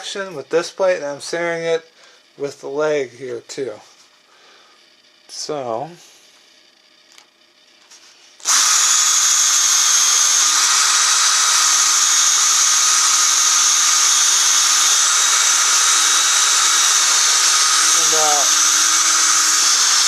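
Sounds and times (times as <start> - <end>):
electric drill boring wood: 8.4 - 20.0.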